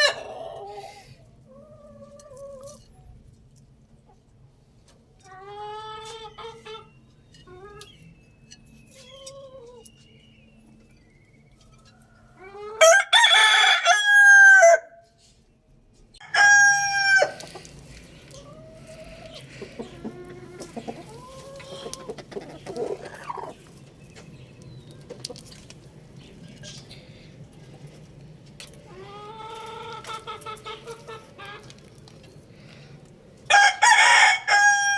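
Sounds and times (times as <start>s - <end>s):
roosters crowing: 0.0s - 0.9s, 11.8s - 15.0s, 16.2s - 17.8s, 33.4s - 34.9s
soft clucking calls: 17.4s - 23.8s.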